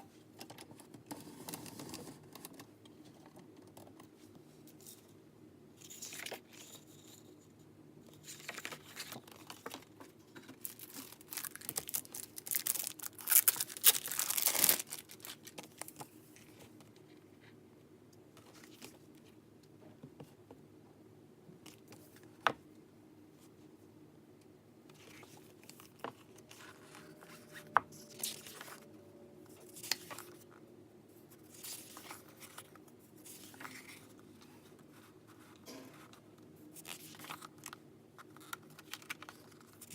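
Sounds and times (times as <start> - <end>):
packaging tearing and rustling: 10.5 - 16.0.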